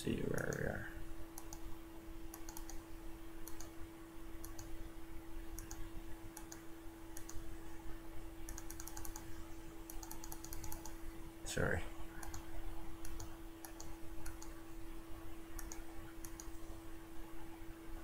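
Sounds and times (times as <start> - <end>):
low electrical hum: 0.0 - 18.0
computer key clicks: 1.4 - 1.7, 2.3 - 2.8, 3.4 - 3.8, 4.4 - 4.7, 5.6 - 5.8, 6.4 - 6.6, 7.2 - 7.4, 8.5 - 11.0, 12.2 - 14.6, 15.5 - 16.6.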